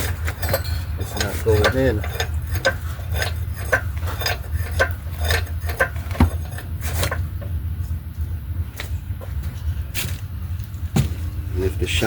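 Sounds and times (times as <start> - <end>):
metal clinks and scraping: 0.0 - 7.3
steady low hum: 0.0 - 12.0.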